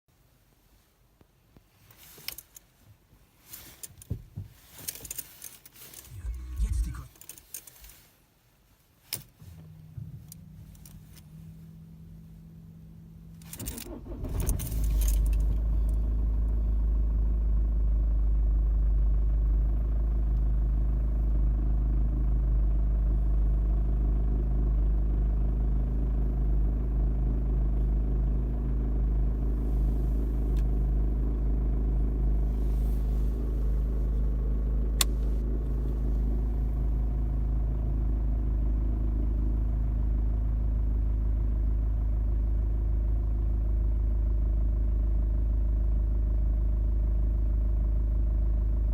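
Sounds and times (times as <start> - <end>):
diesel engine starting and idling: 5.2 - 7.5, 9.4 - 48.9
clattering rattle: 13.4 - 16.0.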